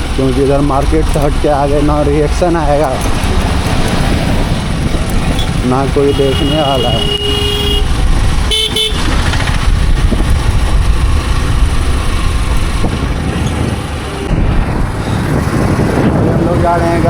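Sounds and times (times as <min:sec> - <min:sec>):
engine rumble: 0:00.0 - 0:17.0
wind noise: 0:02.6 - 0:06.0, 0:07.8 - 0:17.0
vehicle horn honking: 0:06.0 - 0:09.2.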